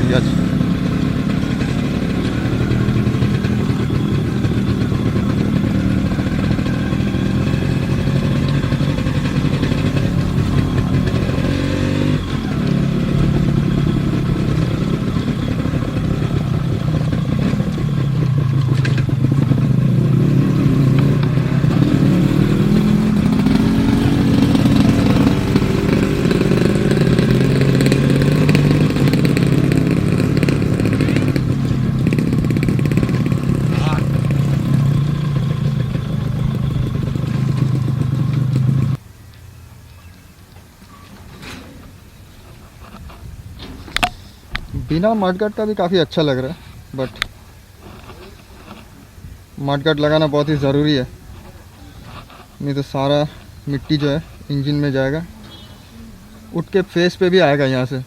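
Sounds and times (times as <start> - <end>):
two-stroke motorcycle engine running: 0.0 - 39.0, 53.0 - 57.9.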